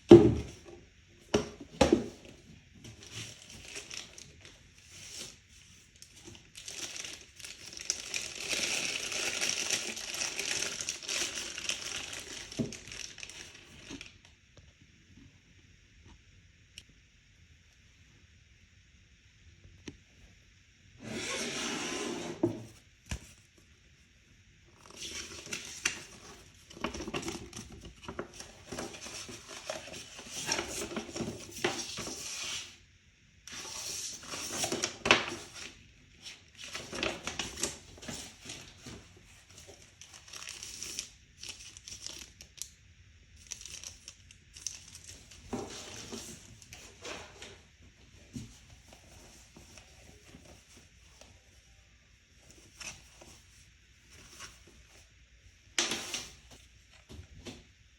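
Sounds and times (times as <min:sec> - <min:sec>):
plastic packaging crinkling: 0:02.9 - 0:14.3, 0:33.5 - 0:47.6.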